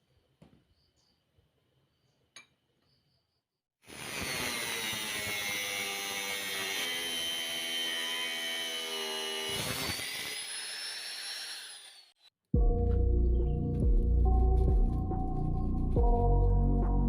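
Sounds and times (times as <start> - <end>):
power tool whining on steel: 3.8 - 12.3.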